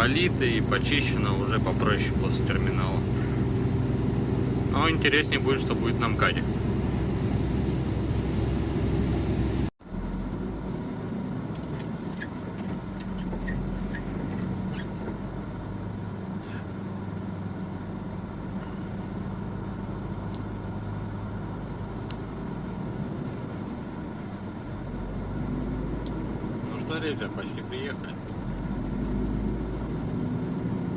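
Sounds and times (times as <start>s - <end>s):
truck engine and tyre noise: 0.0s - 30.9s.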